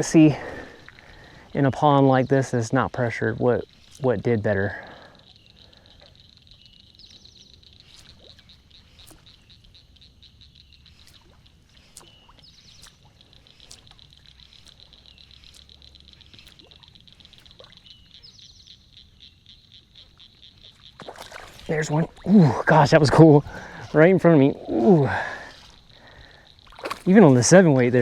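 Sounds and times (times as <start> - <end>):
frogs trilling in chorus: 0.0 - 28.0
short high frog calls: 4.6 - 27.1.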